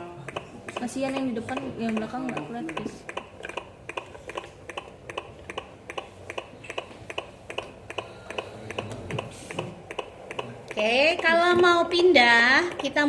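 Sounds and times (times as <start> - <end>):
doppler heartbeat clicks: 0.0 - 12.0.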